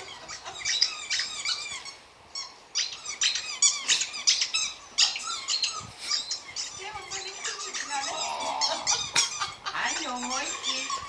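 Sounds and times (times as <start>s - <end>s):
squeaky toy being chewed: 5.0s - 11.0s.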